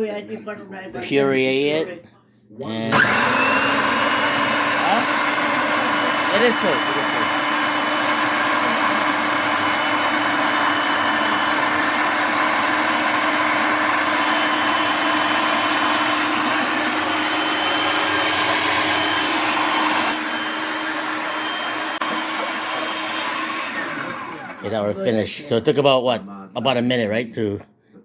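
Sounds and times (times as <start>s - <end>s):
blender motor running: 2.8s - 25.2s.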